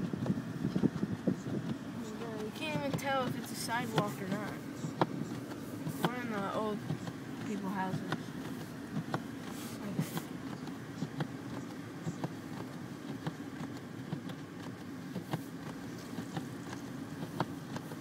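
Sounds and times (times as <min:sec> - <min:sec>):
car engine and tyres droning: 0:00.0 - 0:18.0
faint clicks and knocks: 0:00.1 - 0:18.0.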